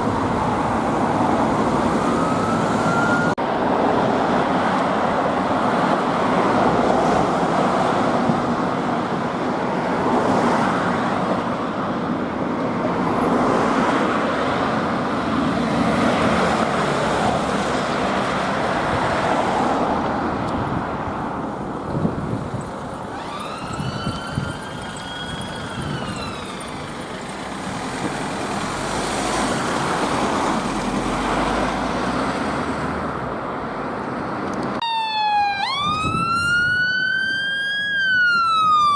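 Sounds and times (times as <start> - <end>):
ambulance siren wail: 0.0 - 3.4, 22.0 - 27.8, 34.8 - 38.9
road traffic noise: 0.0 - 38.9.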